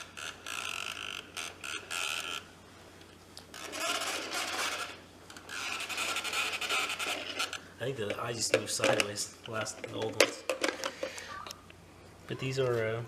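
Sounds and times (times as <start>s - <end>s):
plastic pieces rubbing and knocking: 3.6s - 11.2s.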